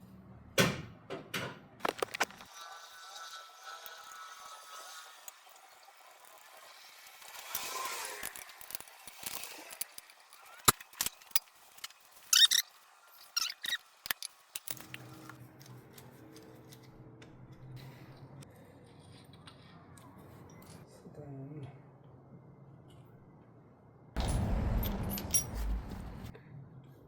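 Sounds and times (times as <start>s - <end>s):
short squeaky scrapes: 12.3s - 13.9s
steady low hum: 24.2s - 26.3s.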